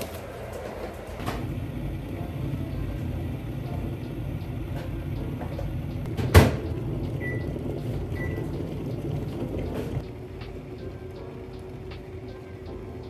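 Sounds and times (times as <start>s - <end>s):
steady low hum: 1.2s - 13.0s
microwave door shutting: 5.4s - 7.4s.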